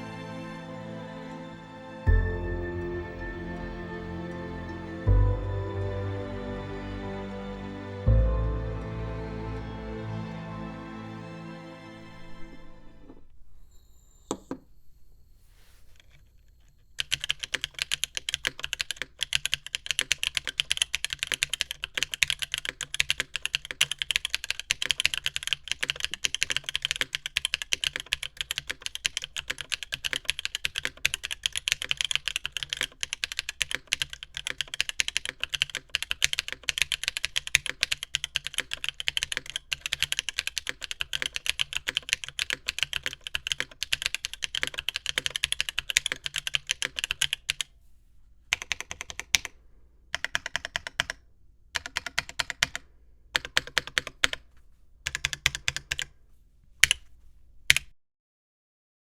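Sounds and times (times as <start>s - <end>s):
mechanical keyboard typing: 17.0s - 47.7s, 48.5s - 49.5s, 50.1s - 51.2s, 51.8s - 52.8s, 53.4s - 54.4s, 55.0s - 56.1s, 56.8s - 57.0s, 57.7s - 57.9s.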